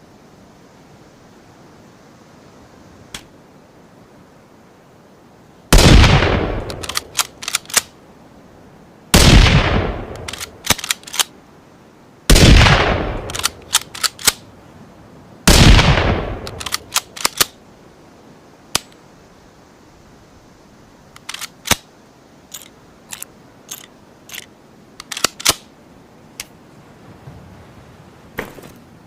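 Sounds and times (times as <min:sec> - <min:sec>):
rifle shots: 0:05.8 - 0:07.9, 0:09.2 - 0:11.1, 0:12.3 - 0:14.4, 0:15.5 - 0:17.5
rifle bolt clicks: 0:06.6 - 0:07.9, 0:10.1 - 0:11.3, 0:13.3 - 0:14.4, 0:16.4 - 0:17.6, 0:21.1 - 0:21.8, 0:22.5 - 0:25.7.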